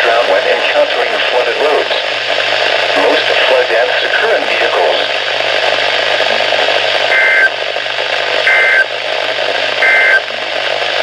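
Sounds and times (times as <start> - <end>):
radio static hiss: 0.0 - 11.0
two-tone digital data bursts: 7.1 - 7.5, 8.5 - 8.9, 9.8 - 10.2.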